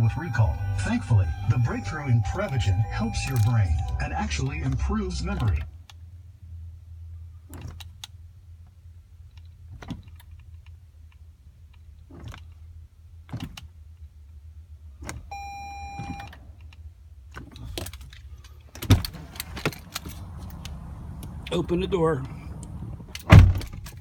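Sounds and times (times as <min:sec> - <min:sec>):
short electronic beep: 0:00.0 - 0:04.5, 0:15.3 - 0:16.3
low steady hum: 0:00.0 - 0:24.0.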